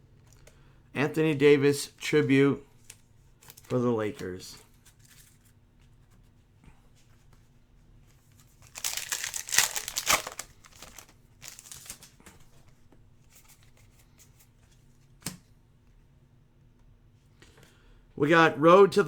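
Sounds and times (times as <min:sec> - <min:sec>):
wrapper tearing and crinkling: 0:08.6 - 0:12.1.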